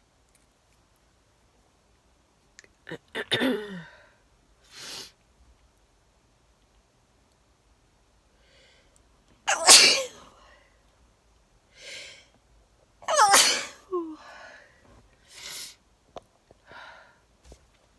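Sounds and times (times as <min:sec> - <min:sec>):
quiet breaths: 0:03.7 - 0:05.2, 0:08.2 - 0:09.2, 0:10.2 - 0:12.6, 0:14.0 - 0:17.7
person sneezing: 0:09.5 - 0:10.3, 0:13.1 - 0:14.2.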